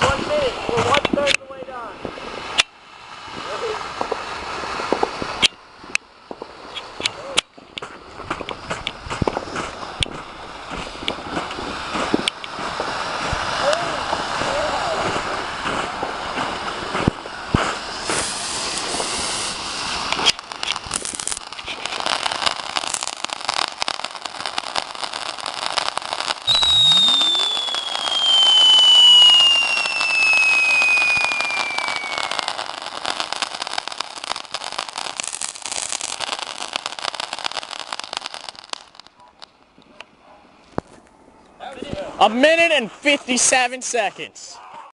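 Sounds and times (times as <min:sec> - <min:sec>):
firework crackling and popping: 0:00.0 - 0:44.6
falling high whistle: 0:26.4 - 0:32.6.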